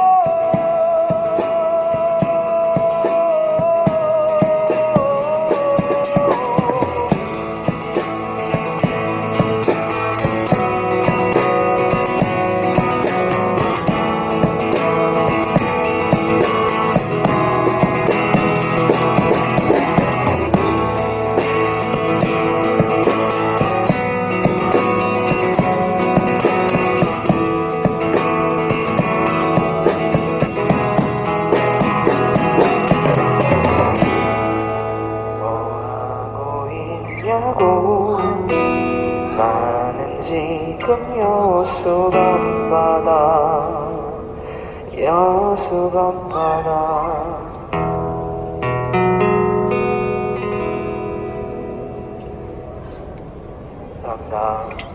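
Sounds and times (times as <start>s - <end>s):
drum kit: 0.0s - 35.1s
bass: 0.0s - 54.9s
guitar: 0.0s - 54.9s.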